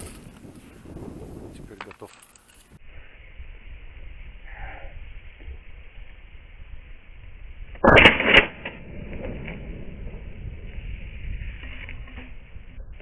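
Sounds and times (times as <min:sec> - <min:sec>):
loud shotgun shots with echo: 0:07.8 - 0:10.4.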